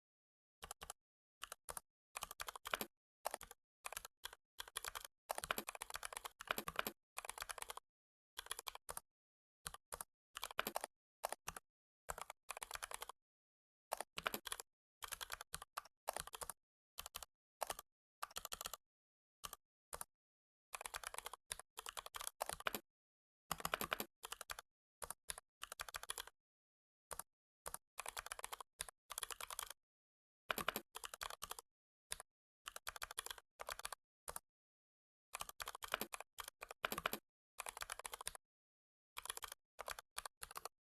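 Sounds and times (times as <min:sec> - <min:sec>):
keyboard typing: 0:04.0 - 0:07.8, 0:12.6 - 0:13.2, 0:14.0 - 0:15.4, 0:20.8 - 0:22.8, 0:23.6 - 0:24.6, 0:25.8 - 0:26.3, 0:30.5 - 0:31.6, 0:36.9 - 0:38.4, 0:39.2 - 0:39.5.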